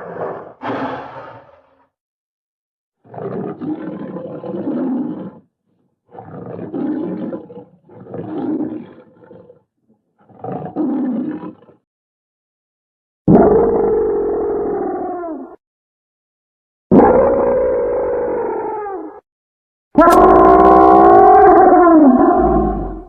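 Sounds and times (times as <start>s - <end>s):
bear roaring: 0.0s - 1.9s, 20.0s - 23.0s.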